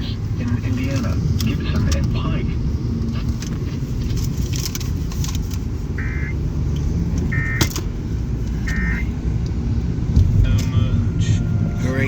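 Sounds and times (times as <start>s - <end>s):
car road and cabin rumble: 0.0s - 12.0s
short electronic beeps: 6.0s - 6.4s, 7.3s - 7.6s.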